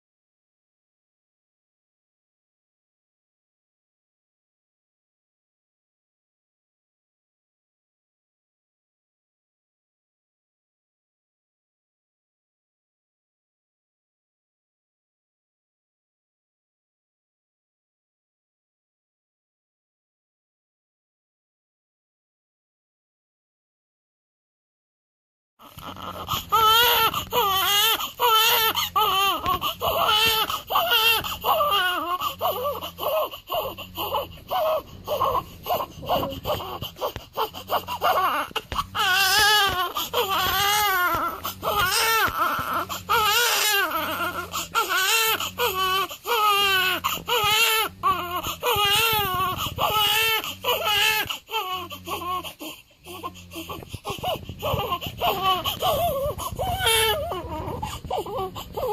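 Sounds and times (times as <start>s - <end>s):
newborn baby crying: 25.6s - 58.9s.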